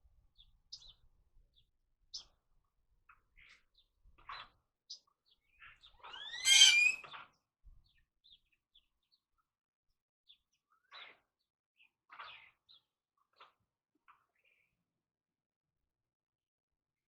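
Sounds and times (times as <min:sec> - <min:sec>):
birds chirping: 0:05.9 - 0:07.0
loud rising bird call: 0:06.1 - 0:07.0.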